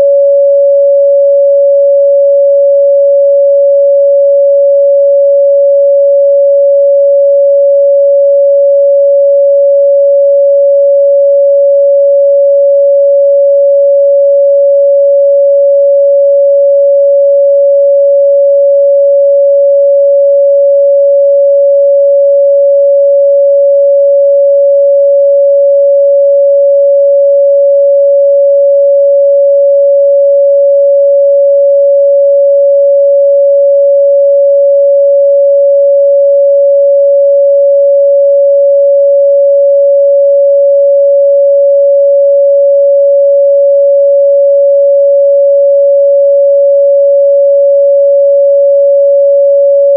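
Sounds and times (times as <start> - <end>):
sine wave test tone: 0.0 - 49.9.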